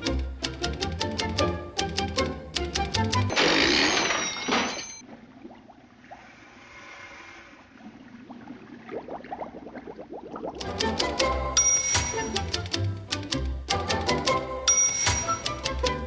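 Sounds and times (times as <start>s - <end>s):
film music: 0.0s - 3.4s, 10.6s - 16.0s
hiss: 6.2s - 7.7s.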